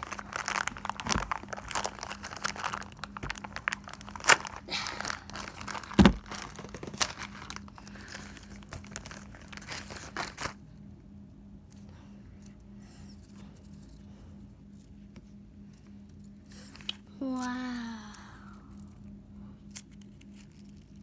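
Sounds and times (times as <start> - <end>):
packaging crinkling and tearing: 0.0 - 10.6.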